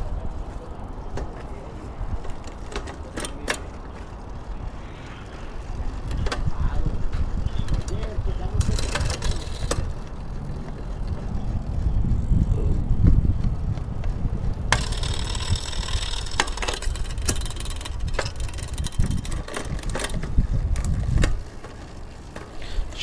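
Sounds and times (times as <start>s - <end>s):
gear change clicks: 0.0s - 23.0s
low rumble: 9.8s - 15.4s
bike chain hissing and ticking: 14.6s - 19.2s, 21.4s - 23.0s.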